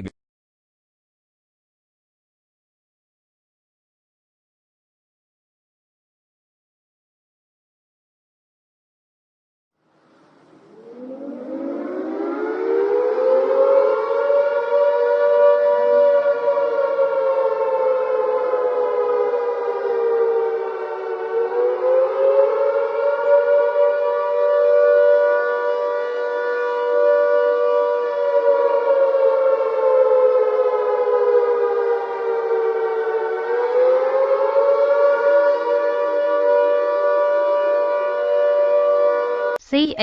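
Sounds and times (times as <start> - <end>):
civil defense siren wailing: 10.0 - 39.6.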